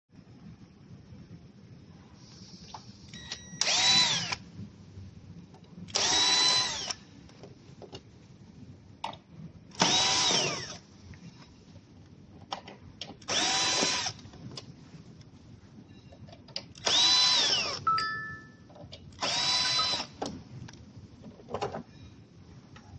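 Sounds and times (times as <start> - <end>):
power drill running: 3.6 - 4.4, 5.9 - 7.0, 9.8 - 10.8, 13.3 - 14.2, 16.8 - 17.8, 19.2 - 20.2.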